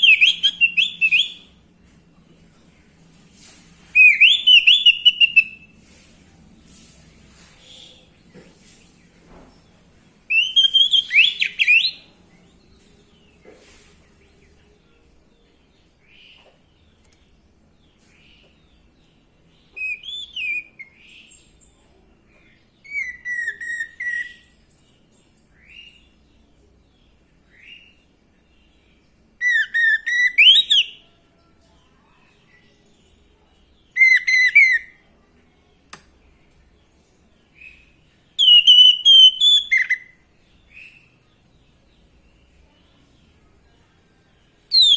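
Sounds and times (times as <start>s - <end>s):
high bird twittering: 10.3s - 12.1s, 19.7s - 21.3s, 38.4s - 41.1s
thrush singing whistled phrases: 29.4s - 31.0s, 38.4s - 40.1s.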